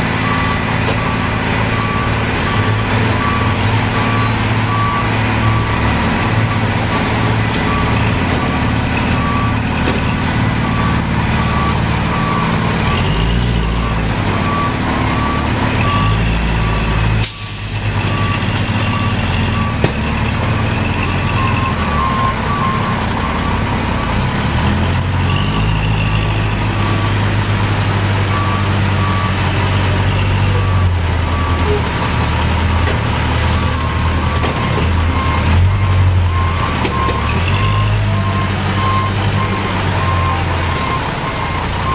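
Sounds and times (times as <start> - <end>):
heavy diesel machinery running: 0.0 - 41.9.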